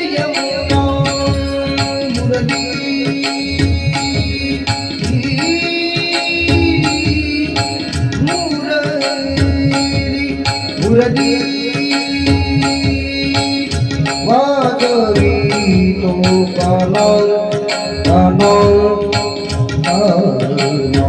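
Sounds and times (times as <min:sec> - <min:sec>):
held melodic tones: 0:00.0 - 0:21.0
person singing: 0:00.0 - 0:21.0.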